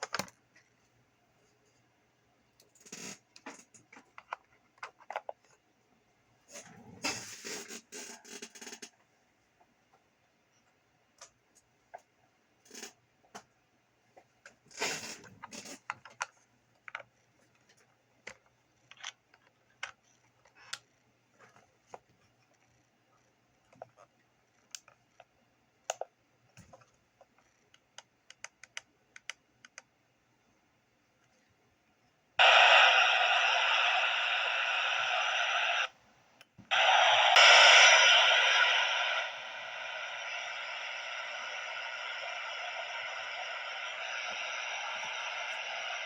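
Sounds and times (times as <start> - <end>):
radio static hiss: 32.4 - 36.0, 36.6 - 46.0.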